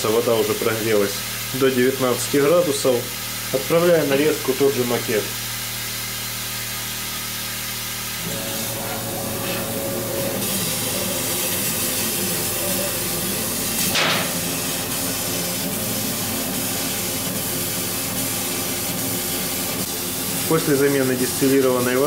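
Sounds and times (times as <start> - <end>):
hiss of air and fans: 0.0 - 22.0
gantry motors whirring: 8.2 - 15.7.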